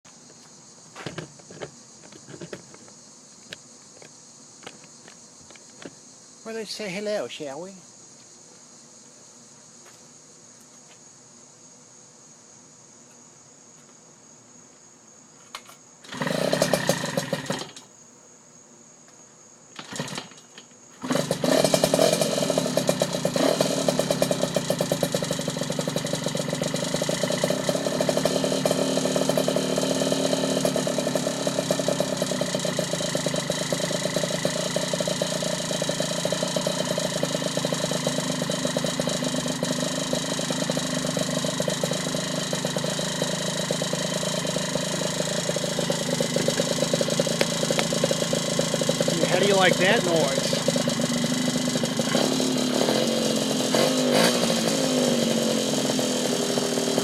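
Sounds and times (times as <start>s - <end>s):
two-stroke engine starting and idling: 16.0s - 17.8s, 19.8s - 57.0s.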